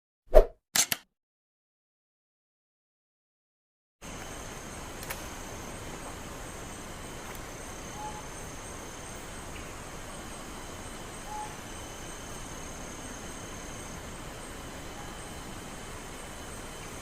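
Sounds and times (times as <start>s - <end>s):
insects droning: 4.0s - 17.0s
bird whistling: 7.9s - 8.3s, 11.2s - 11.6s.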